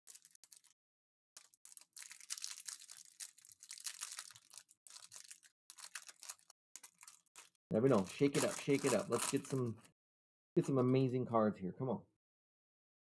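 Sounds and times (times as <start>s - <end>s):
foil wrappers crinkling and tearing: 0.0s - 0.8s, 1.4s - 9.9s.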